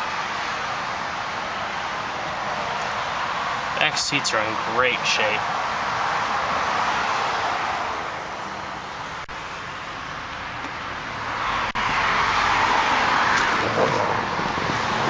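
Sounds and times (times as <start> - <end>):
highway traffic rushing past: 0.0 - 15.0.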